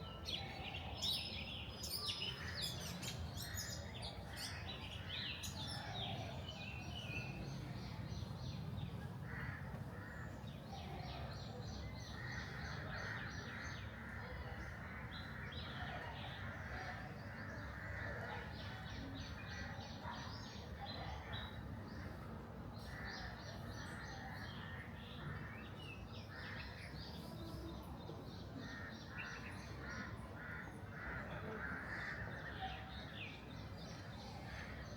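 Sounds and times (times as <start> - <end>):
birds chirping and calling: 0.4 - 7.8.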